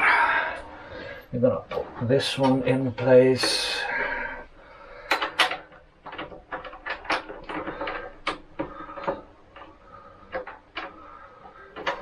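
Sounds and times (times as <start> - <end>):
tools and metal parts clicking: 5.0 - 12.0.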